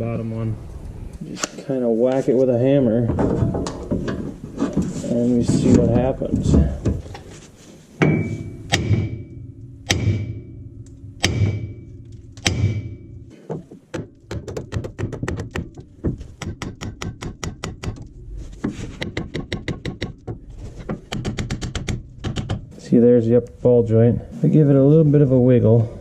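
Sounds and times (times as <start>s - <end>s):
hammer striking metal: 8.0s - 13.4s.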